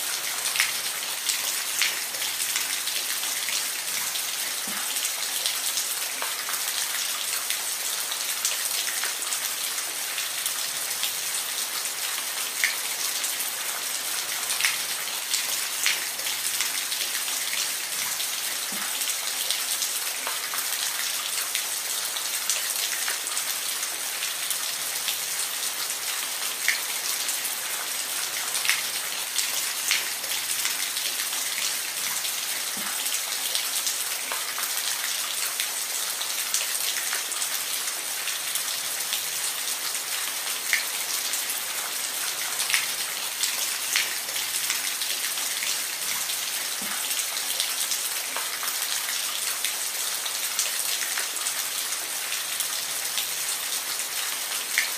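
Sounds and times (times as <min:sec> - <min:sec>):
steady rain hiss: 0:00.0 - 0:54.9.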